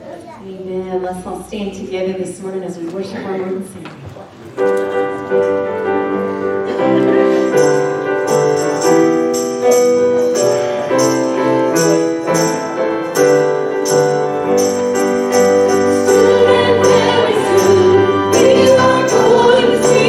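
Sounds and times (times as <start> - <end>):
sustained keyboard chords: 4.5 - 20.0
jingling percussion beat: 7.3 - 20.0.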